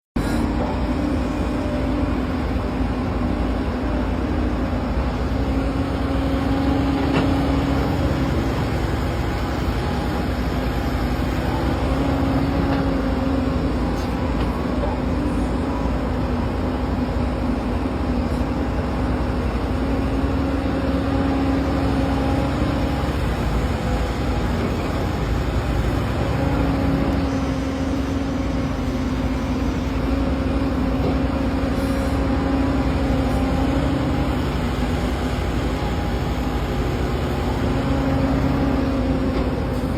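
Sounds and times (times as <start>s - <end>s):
road noise: 0.2s - 39.9s
vehicle engine drone: 0.2s - 39.9s.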